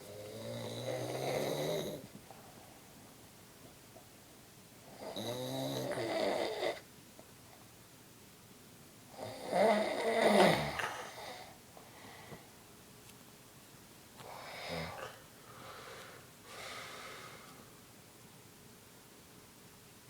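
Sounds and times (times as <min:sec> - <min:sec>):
man snoring: 0:00.1 - 0:02.0, 0:05.0 - 0:06.8, 0:09.2 - 0:11.3, 0:14.3 - 0:15.2.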